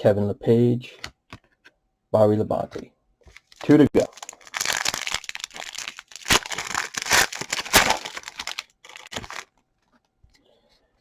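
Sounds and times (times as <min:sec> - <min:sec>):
card pack wrapper tearing: 0:03.3 - 0:09.5.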